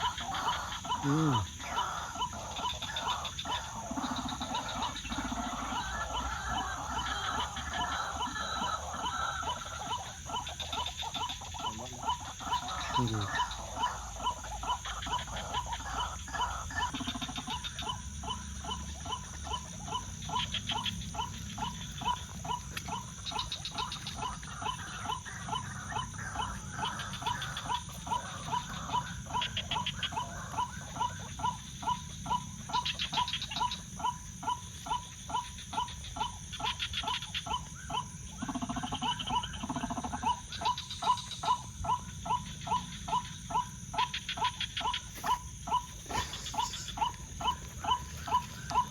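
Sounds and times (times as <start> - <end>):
high insect drone: 0.0 - 48.9
night insects chirping: 0.0 - 48.9
waterhen croaking calls: 0.0 - 48.9.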